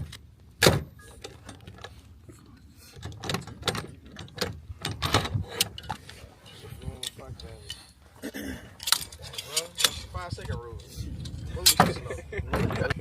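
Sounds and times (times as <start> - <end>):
metal rifle parts clacking: 2.9 - 8.0, 8.7 - 12.0.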